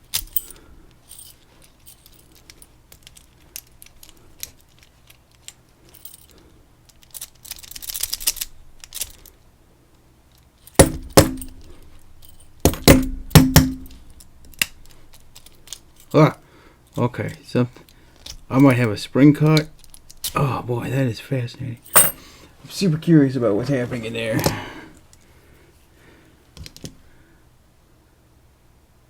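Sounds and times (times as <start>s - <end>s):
keys jingling: 0.0s - 6.4s, 10.6s - 16.2s, 21.8s - 22.4s
small metal clicks: 0.1s - 9.3s, 17.9s - 20.4s
sharp metal knocks: 10.8s - 11.7s, 12.6s - 14.0s, 21.9s - 22.3s.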